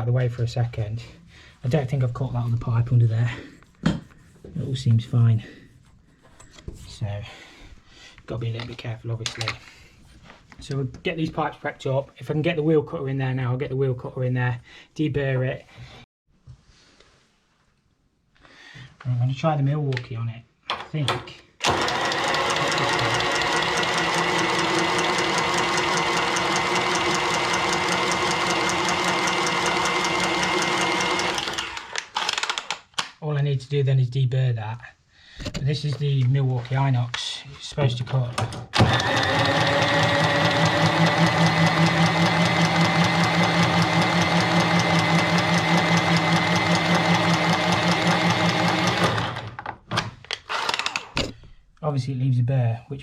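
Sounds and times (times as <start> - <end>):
cordless pipe cutter ticking: 21.7 - 32.8, 38.8 - 49.4.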